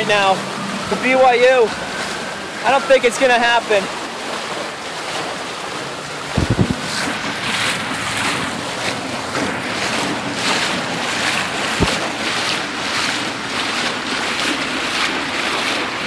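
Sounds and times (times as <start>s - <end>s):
rushing floodwater: 0.0s - 16.0s
wind buffeting microphone: 5.8s - 16.0s.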